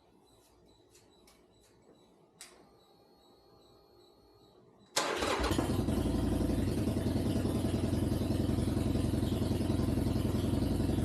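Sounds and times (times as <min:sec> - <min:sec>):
motorcycle engine running: 0:05.1 - 0:11.0.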